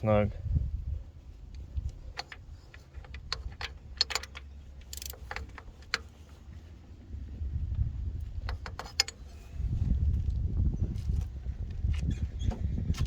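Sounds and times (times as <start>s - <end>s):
hand ratchet clicking: 2.2s - 5.6s.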